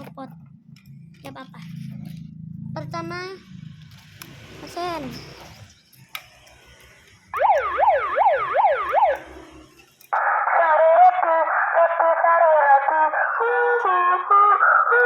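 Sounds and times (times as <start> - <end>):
electronic siren yelp: 7.3 - 15.0.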